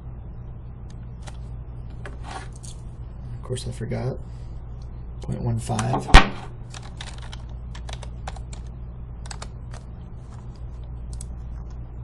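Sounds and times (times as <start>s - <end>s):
low hum: 0.0s - 12.0s
keyboard typing: 6.7s - 10.5s.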